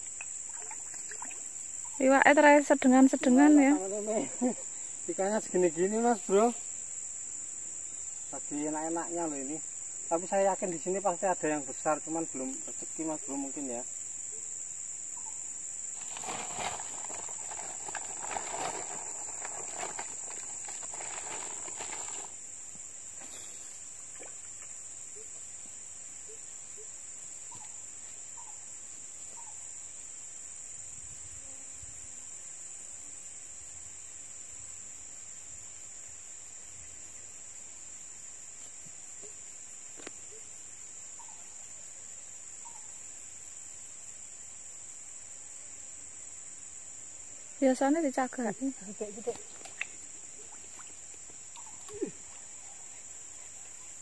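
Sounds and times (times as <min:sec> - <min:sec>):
high-pitched insect drone: 0:00.0 - 0:54.0.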